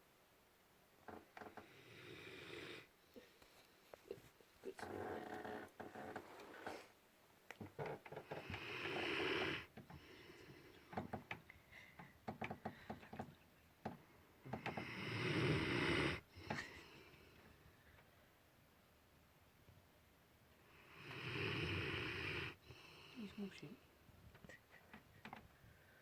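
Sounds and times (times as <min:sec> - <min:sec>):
snoring: 0:01.4 - 0:02.9, 0:04.7 - 0:06.9, 0:08.2 - 0:11.2, 0:14.4 - 0:16.8, 0:20.7 - 0:23.4.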